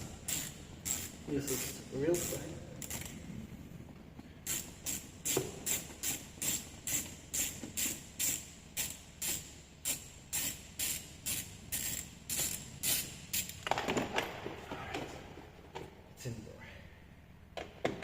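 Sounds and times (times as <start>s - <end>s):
hand ratchet clicking: 0.2s - 3.2s, 4.4s - 13.7s.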